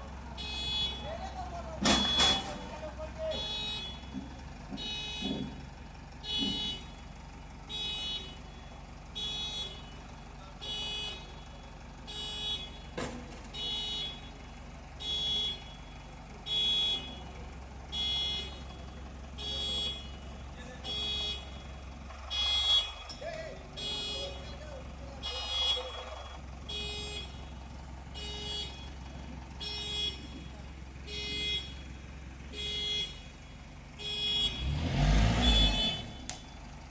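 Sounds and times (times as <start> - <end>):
low engine hum: 0.0 - 36.9
machine warning beeper: 0.4 - 4.2, 17.9 - 18.7, 19.4 - 21.6, 22.3 - 23.2, 23.8 - 24.6, 25.2 - 27.6, 28.2 - 29.0, 29.6 - 31.9, 32.6 - 33.2, 34.0 - 36.4.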